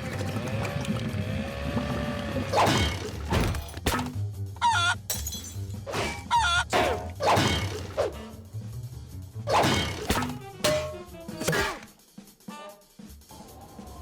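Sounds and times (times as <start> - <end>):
sharp cartoon whacks and crashes: 2.5 - 4.2, 5.8 - 8.4, 9.5 - 12.0
squeaky cartoon noise: 4.6 - 5.0, 6.0 - 6.8.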